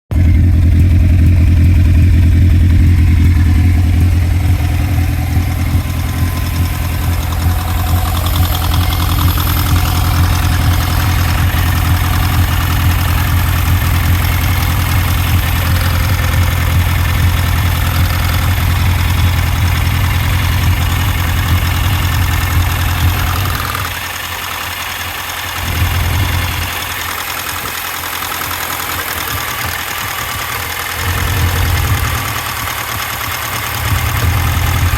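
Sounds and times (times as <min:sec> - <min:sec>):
car engine idling with misfire: 0:00.1 - 0:34.9.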